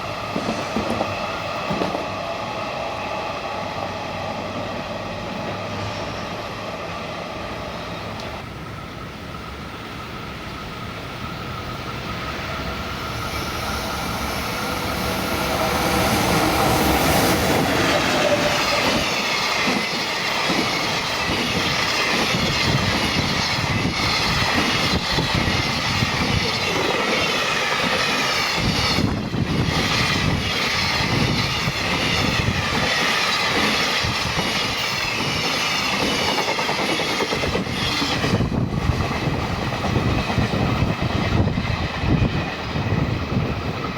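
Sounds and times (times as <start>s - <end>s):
freight train passing: 0.0s - 43.9s.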